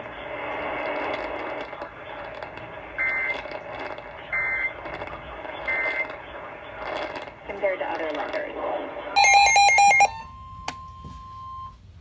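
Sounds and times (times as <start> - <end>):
radio hiss: 0.0 - 9.2.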